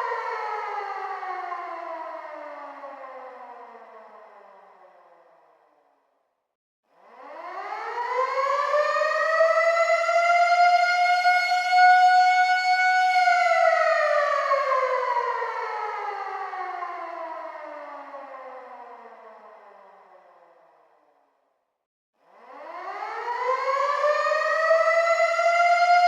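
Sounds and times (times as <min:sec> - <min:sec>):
air raid siren wailing: 0:00.0 - 0:03.8, 0:07.3 - 0:19.8, 0:22.4 - 0:26.0.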